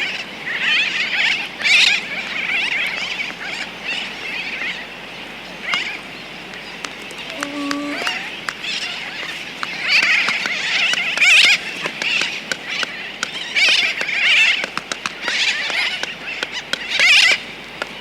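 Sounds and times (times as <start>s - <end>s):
distant tern colony chattering: 0.0s - 18.0s
tern calls: 0.0s - 18.0s
albatross bill clicking: 6.5s - 8.6s, 9.6s - 18.0s.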